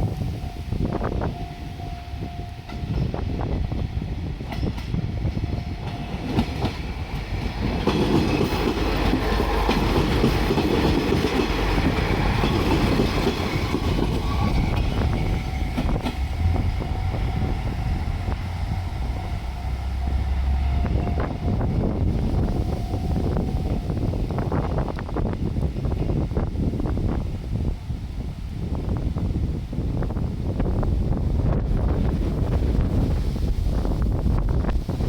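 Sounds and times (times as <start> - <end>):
diesel engine rumble: 5.0 - 27.1
train wheels clacking over rail joints: 5.6 - 20.2.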